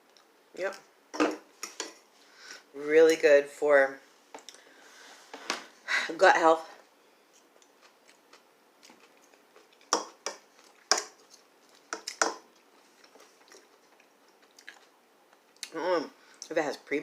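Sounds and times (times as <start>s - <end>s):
chewing crunchy food: 7.4s - 15.7s.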